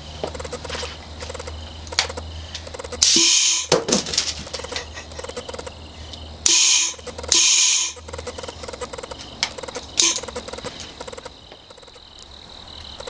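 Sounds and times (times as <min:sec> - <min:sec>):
compressed air hissing blasts: 0:03.0 - 0:03.8, 0:06.4 - 0:08.0.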